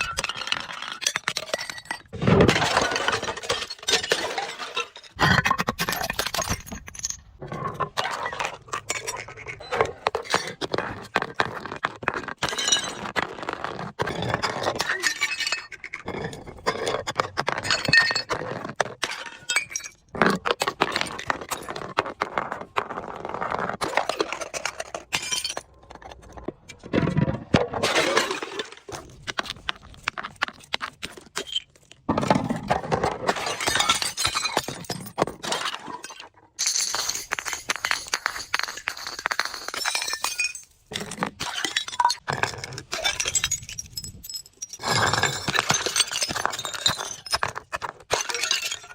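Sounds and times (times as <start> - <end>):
glass bottles shattering: 0.0 - 7.3, 14.7 - 16.4, 19.0 - 20.1, 24.5 - 25.7, 27.2 - 28.9, 33.2 - 48.9.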